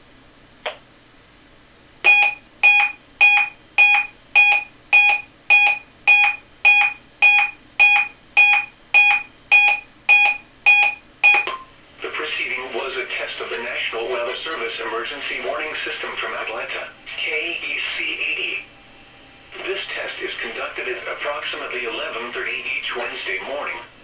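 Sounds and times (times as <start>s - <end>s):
weather radio alert beeping: 2.1s - 11.6s.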